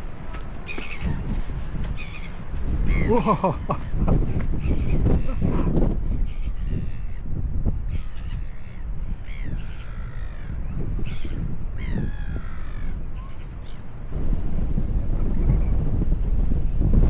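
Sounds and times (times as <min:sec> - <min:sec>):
harsh bird calls: 0:00.0 - 0:07.3
wind buffeting microphone: 0:00.0 - 0:17.0.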